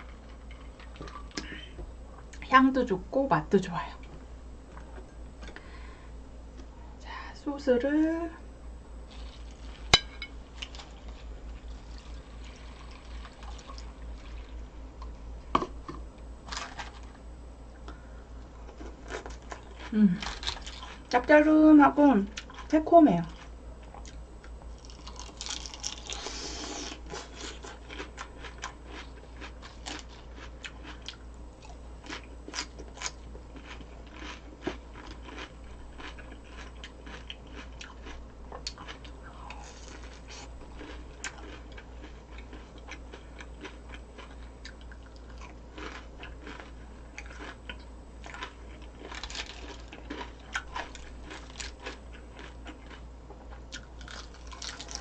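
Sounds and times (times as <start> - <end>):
steady low hum: 0.0 - 55.0
person chewing and crunching food: 9.0 - 15.2, 17.9 - 21.2, 22.3 - 55.0.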